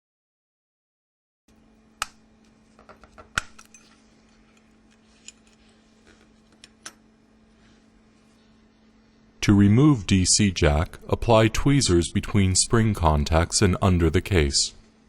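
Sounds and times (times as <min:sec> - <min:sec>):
faint steady hum: 0:01.5 - 0:15.0.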